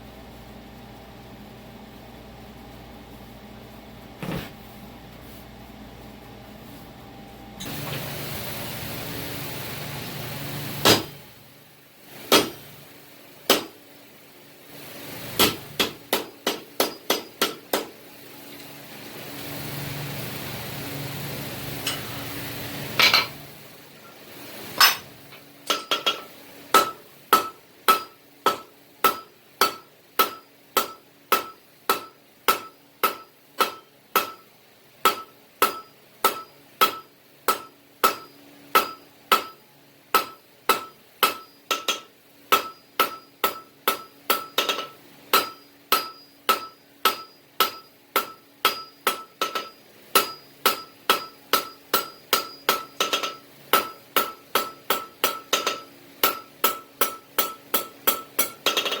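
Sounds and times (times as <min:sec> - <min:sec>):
hammer striking steel on anvil: 0:12.3 - 0:12.6, 0:13.5 - 0:13.8, 0:15.4 - 0:18.0, 0:23.0 - 0:23.4, 0:24.8 - 0:25.1, 0:25.7 - 0:59.0.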